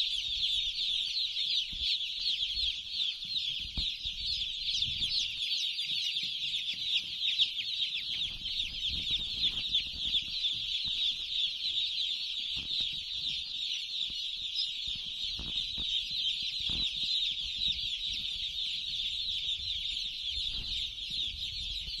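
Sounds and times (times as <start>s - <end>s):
chickens peeping and chirping: 0.0s - 22.0s.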